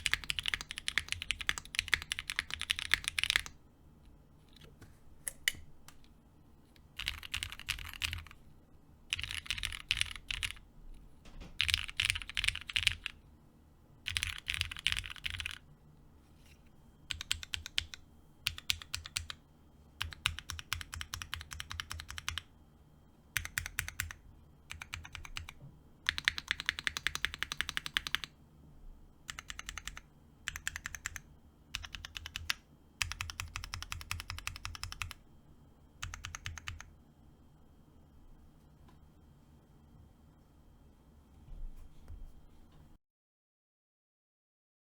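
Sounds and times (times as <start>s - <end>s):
typing on mechanical keyboard: 0.0s - 3.6s, 6.9s - 8.4s, 9.1s - 10.6s, 11.5s - 13.2s, 14.1s - 15.6s, 17.1s - 19.4s, 20.0s - 22.5s, 23.4s - 28.3s, 29.3s - 31.2s, 31.8s - 35.2s, 36.0s - 36.9s.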